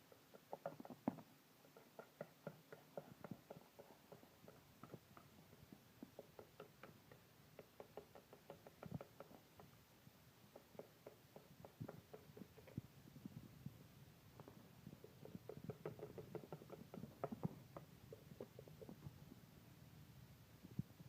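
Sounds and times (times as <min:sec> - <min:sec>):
small clicks and taps: 0:00.1 - 0:09.7, 0:14.4 - 0:19.1.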